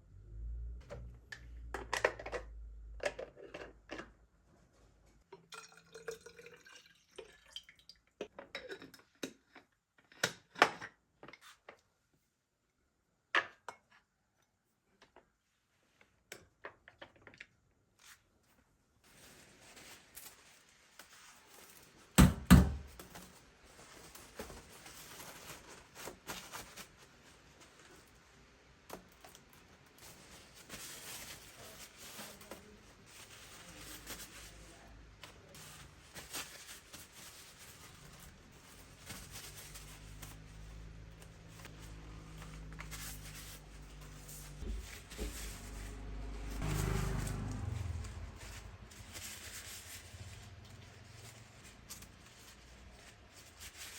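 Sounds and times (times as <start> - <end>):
rustling and tearing: 19.0 - 22.2, 22.8 - 53.9.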